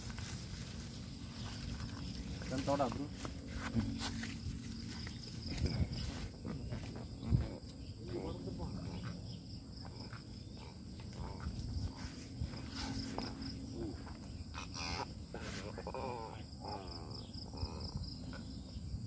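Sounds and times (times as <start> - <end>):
insects trilling: 0.0 - 19.0
indistinct voices: 5.6 - 18.0.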